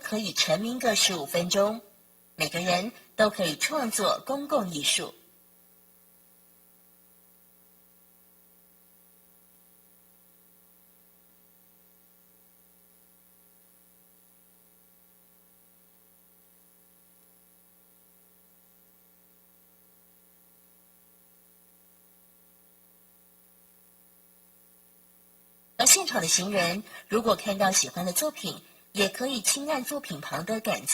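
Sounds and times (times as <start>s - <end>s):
faint electrical hum: 0.0s - 30.9s.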